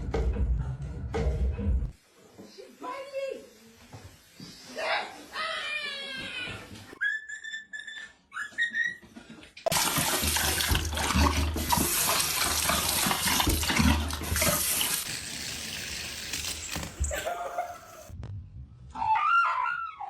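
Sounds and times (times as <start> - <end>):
water running hard: 9.7 - 18.1.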